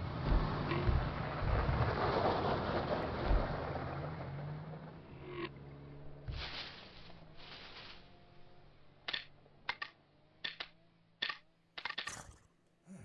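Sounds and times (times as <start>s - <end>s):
low rumble: 0.0s - 5.2s.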